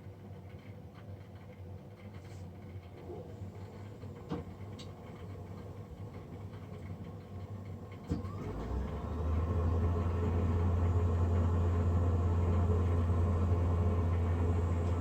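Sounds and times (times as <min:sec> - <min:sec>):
boiler fan humming: 0:02.1 - 0:15.0
rising fan whine: 0:07.5 - 0:15.0.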